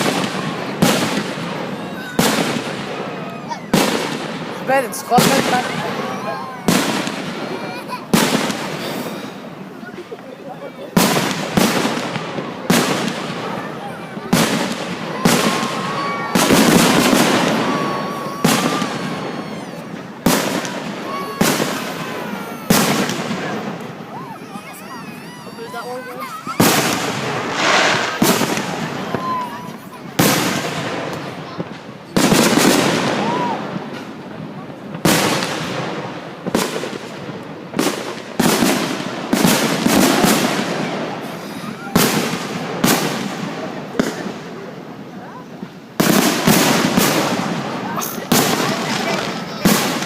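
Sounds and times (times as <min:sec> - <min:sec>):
fireworks bangs with rumbling echo: 0:00.0 - 0:50.0.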